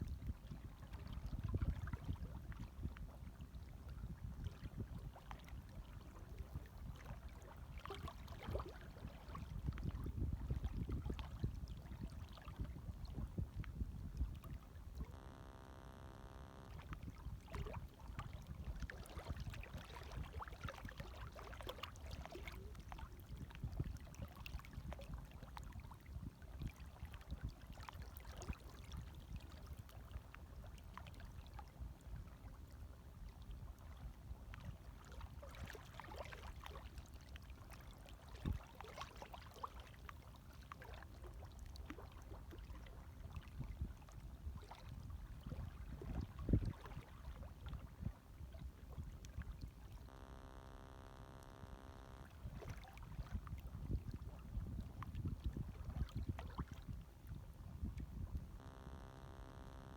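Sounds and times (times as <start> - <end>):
gentle waves lapping: 15.0 - 59.9
small splashes and gurgles: 49.3 - 57.2.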